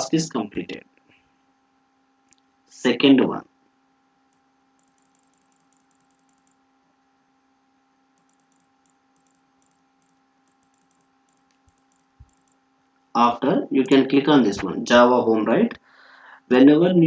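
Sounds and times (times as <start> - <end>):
faint steady hum: 0.0 - 17.0
computer keys and mouse clicks: 4.3 - 6.6, 8.1 - 12.7.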